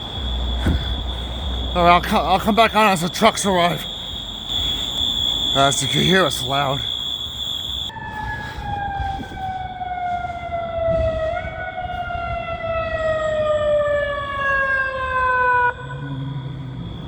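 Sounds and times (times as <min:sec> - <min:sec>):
fire engine siren winding down: 0:00.0 - 0:17.0
high-pitched fire alarm tone: 0:00.0 - 0:17.0.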